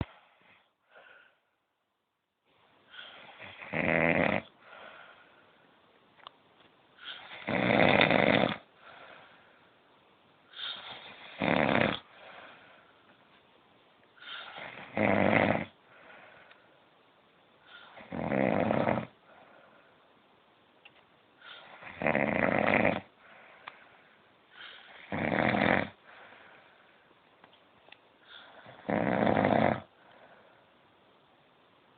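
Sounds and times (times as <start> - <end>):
man snoring: 3.3 - 4.5, 7.1 - 8.7, 10.9 - 12.1, 14.4 - 15.8, 17.9 - 19.2, 21.6 - 23.1, 24.9 - 26.0, 28.4 - 29.9.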